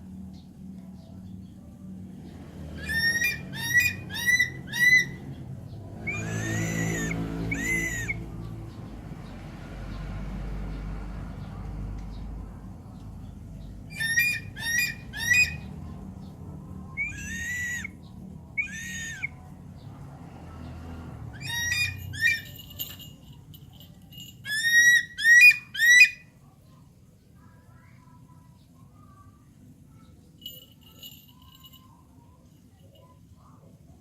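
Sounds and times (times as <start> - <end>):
heron harsh squawks: 2.8 - 5.2, 6.0 - 8.2, 17.0 - 17.9, 18.6 - 19.3.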